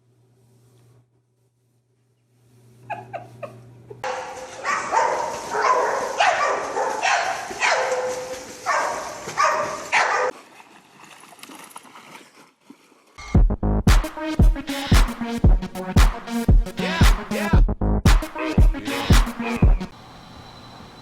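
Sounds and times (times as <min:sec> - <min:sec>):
dog barking and yelping: 0:04.0 - 0:10.3
music with a strong beat: 0:13.2 - 0:19.9.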